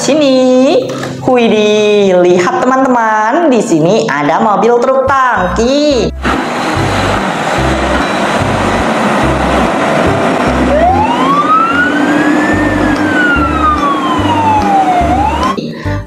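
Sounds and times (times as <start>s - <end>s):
loud rushing noise: 6.1s - 15.6s
low pulsing: 6.1s - 15.6s
siren wailing: 6.6s - 15.6s.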